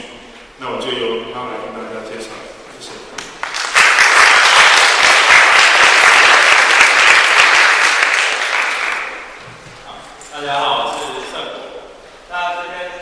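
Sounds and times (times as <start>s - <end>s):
audience applauding: 3.3s - 9.4s.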